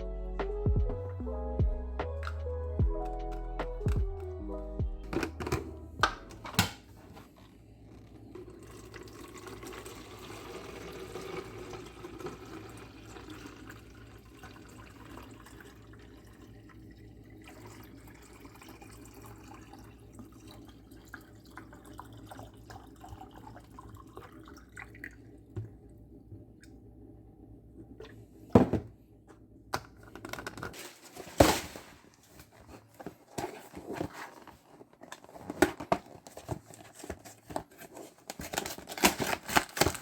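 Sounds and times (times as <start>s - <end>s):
tap water running into sink: 8.5s - 25.8s.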